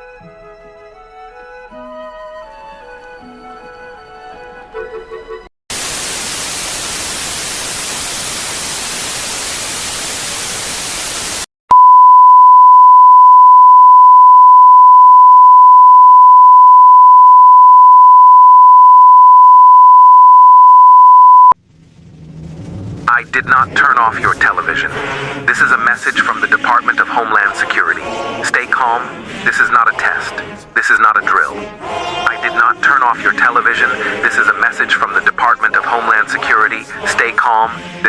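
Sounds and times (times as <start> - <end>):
television static hiss: 5.7 - 11.5.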